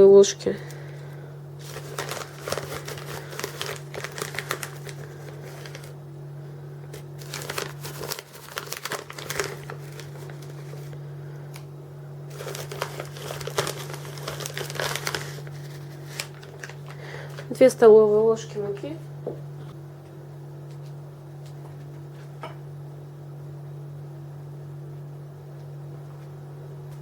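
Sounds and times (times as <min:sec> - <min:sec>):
packet crinkling: 0:01.6 - 0:06.0, 0:06.9 - 0:11.7, 0:12.3 - 0:17.7.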